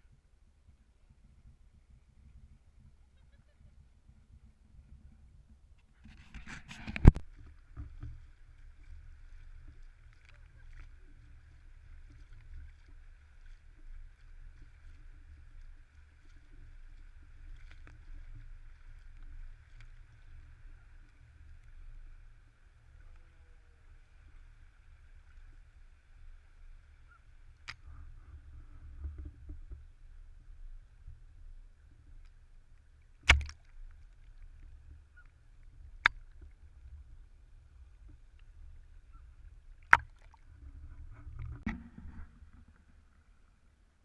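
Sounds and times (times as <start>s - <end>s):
wind rumble on microphone: 0.0s - 43.8s
faint steady hiss: 0.0s - 44.0s
sharp click: 33.2s - 33.6s.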